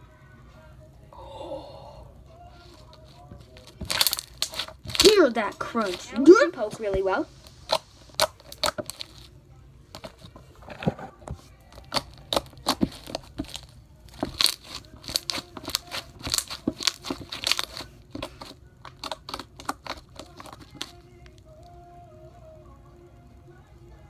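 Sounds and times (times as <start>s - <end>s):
crunchy slime crackling and popping: 3.7s - 6.2s, 7.6s - 9.3s, 11.8s - 21.0s.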